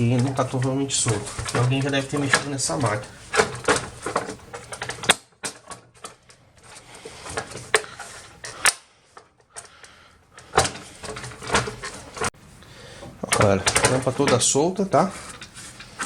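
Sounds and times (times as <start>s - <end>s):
handling of plastic casing: 0.0s - 9.7s.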